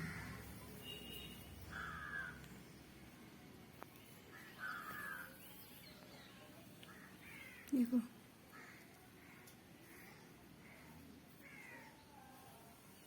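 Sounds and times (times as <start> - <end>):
faint crow caws: 0.0 - 0.5, 1.7 - 2.5, 4.3 - 5.4, 6.9 - 7.9, 8.5 - 12.0.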